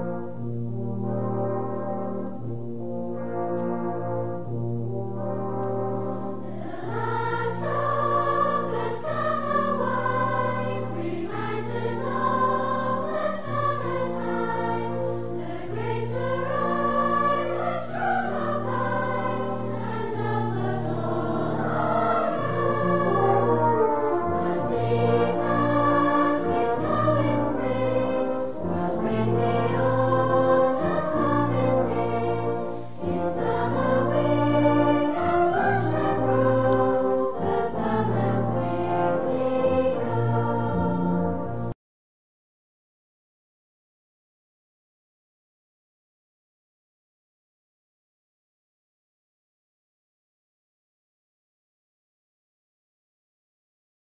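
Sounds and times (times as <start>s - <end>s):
choral singing with orchestra: 4.2s - 41.8s.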